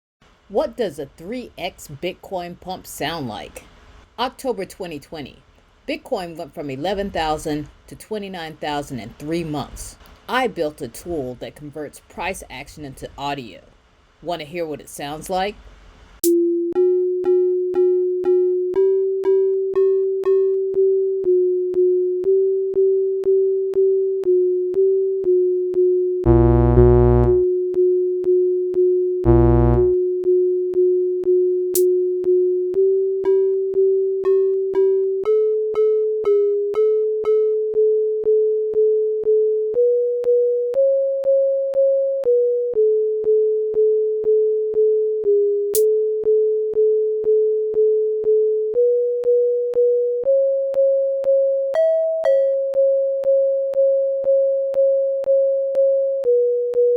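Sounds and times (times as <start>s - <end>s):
synthesized sine tones: 25.4s - 27.5s, 29.2s - 30.1s
low bass tones: 26.2s - 27.5s, 29.2s - 30.0s.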